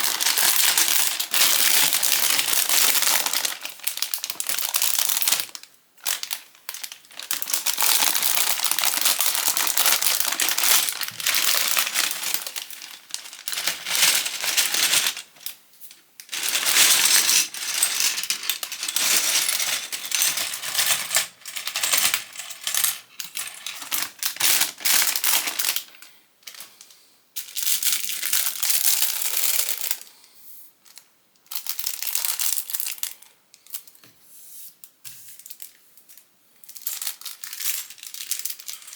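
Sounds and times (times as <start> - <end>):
plastic bricks rattling: 0.0 - 5.5, 6.1 - 15.3.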